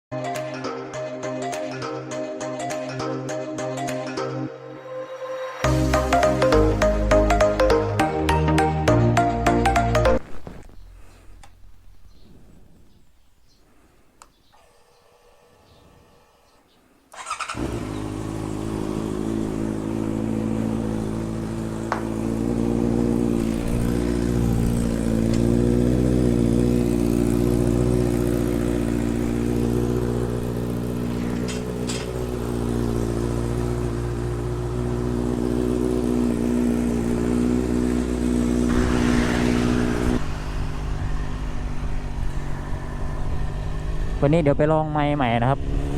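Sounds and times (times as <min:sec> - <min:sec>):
motorcycle engine idling: 0:17.2 - 0:39.4.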